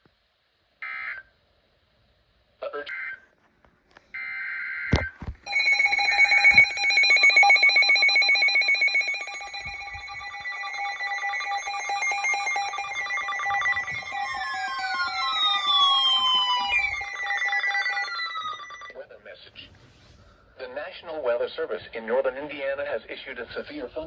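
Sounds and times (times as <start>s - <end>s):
data tones burst: 5.5s - 18.9s
electronic alert alarm pulsing: 5.5s - 18.9s
falling tone: 5.5s - 18.9s.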